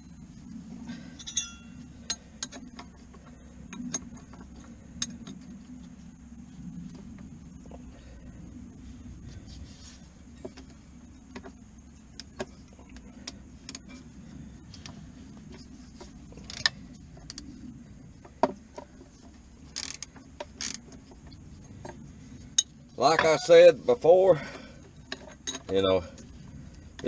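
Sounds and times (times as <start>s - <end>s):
steady low hum: 0.0s - 27.0s
metal tools clanking: 0.9s - 3.0s, 24.4s - 26.3s.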